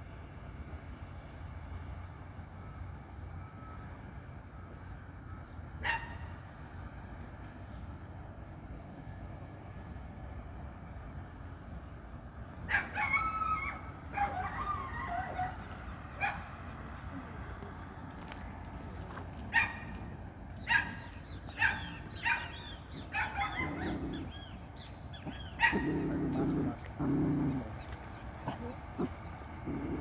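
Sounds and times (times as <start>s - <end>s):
domestic animal calls: 25.2s - 30.0s.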